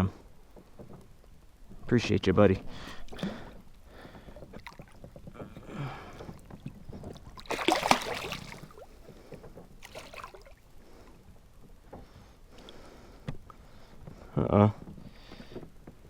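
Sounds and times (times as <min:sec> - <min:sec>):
water sloshing and splashing: 0:03.0 - 0:11.2.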